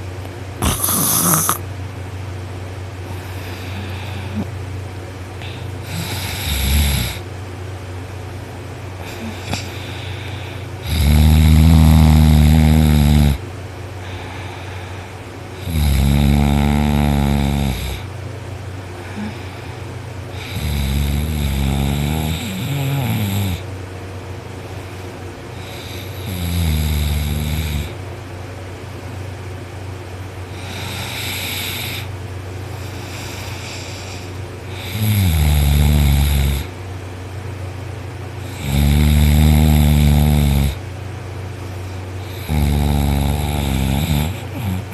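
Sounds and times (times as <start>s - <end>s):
steady low hum: 0.0s - 44.9s
man snoring loudly: 0.6s - 1.6s, 5.4s - 7.2s, 9.0s - 13.4s, 15.6s - 18.1s, 19.0s - 19.6s, 20.3s - 23.7s, 25.6s - 28.0s, 30.5s - 32.1s, 32.9s - 36.7s, 38.4s - 40.8s, 42.2s - 44.9s.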